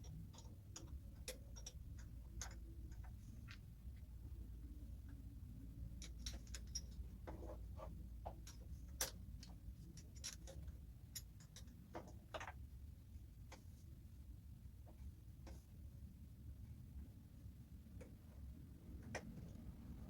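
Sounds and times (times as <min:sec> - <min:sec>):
light clicks and taps: 0:00.0 - 0:04.1, 0:19.0 - 0:19.7
low background rumble: 0:00.0 - 0:20.0.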